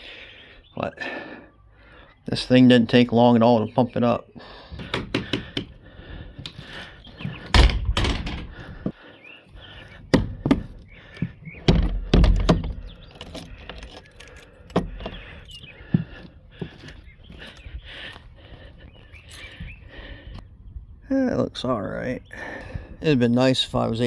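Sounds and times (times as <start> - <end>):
hard objects thunking: 4.6 - 9.0, 9.8 - 17.6.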